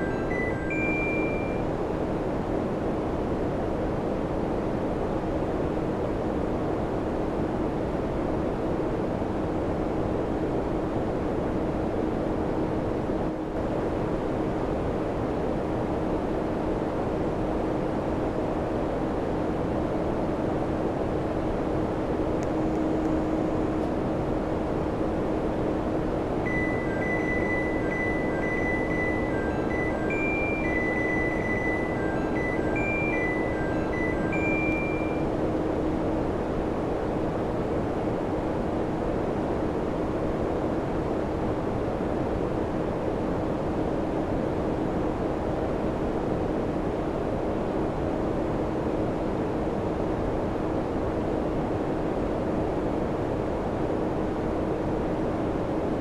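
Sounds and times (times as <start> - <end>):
high electronic beep: 0.0 - 1.6, 26.5 - 35.3
air conditioner running: 0.0 - 56.0.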